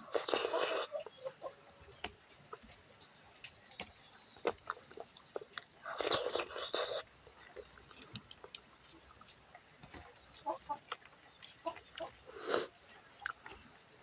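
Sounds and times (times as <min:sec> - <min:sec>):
chewing and lip smacking: 0:00.0 - 0:14.0.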